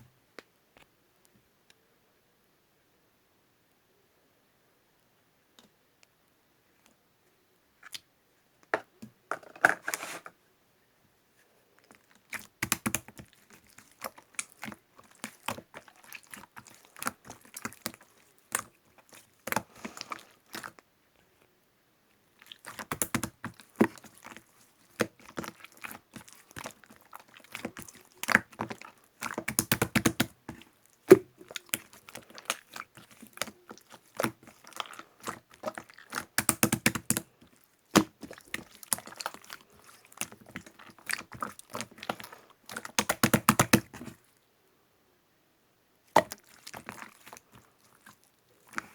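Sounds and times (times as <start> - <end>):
slime crackling and popping: 22.4 - 44.2.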